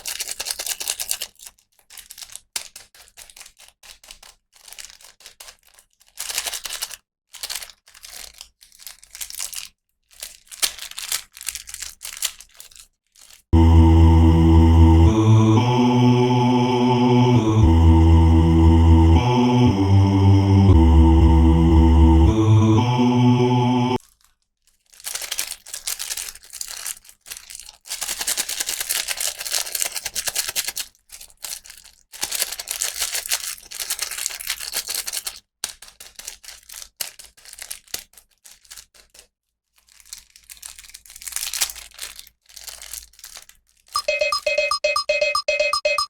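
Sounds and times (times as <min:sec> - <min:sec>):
packaging crinkling and tearing: 0:00.0 - 0:13.5, 0:24.0 - 0:44.0
tune playing: 0:13.6 - 0:24.0, 0:44.0 - 0:46.0.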